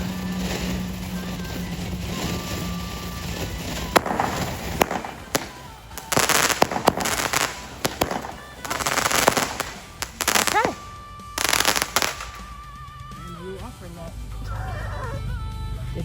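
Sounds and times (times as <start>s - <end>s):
sharp crackling pops: 0.0s - 12.8s
fountain firework hissing: 0.0s - 13.5s.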